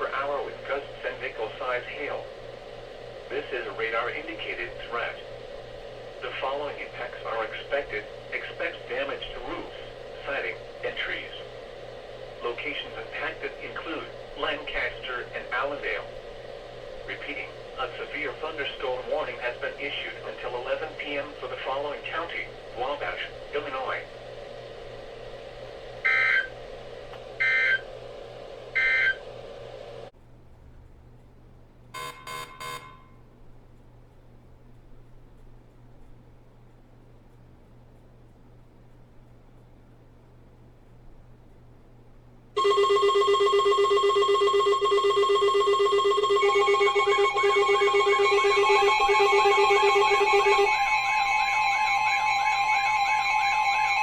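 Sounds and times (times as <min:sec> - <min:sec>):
radio hiss and hum: 0:00.0 - 0:30.1, 0:45.9 - 0:54.0
buzzing digital chirps: 0:42.6 - 0:54.0
electronic music: 0:45.1 - 0:54.0.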